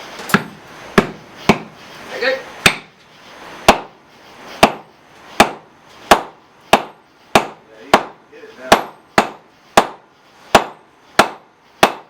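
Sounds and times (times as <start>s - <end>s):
hammer striking hot steel on anvil: 0.3s - 1.8s, 2.6s - 3.0s, 3.6s - 3.9s, 4.6s - 12.0s.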